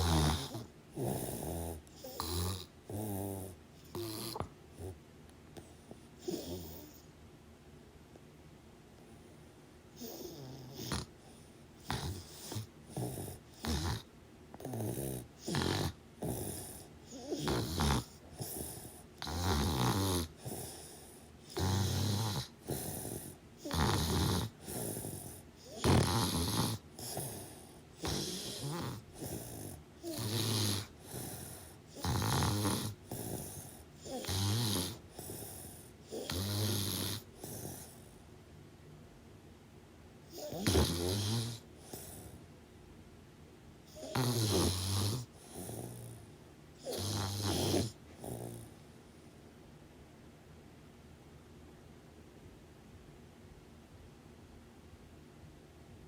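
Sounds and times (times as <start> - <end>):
person snoring loudly: 0.0 - 5.0, 6.2 - 7.0, 10.0 - 11.1, 11.8 - 20.9, 21.5 - 37.9, 40.3 - 42.2, 43.9 - 46.2, 46.8 - 48.7.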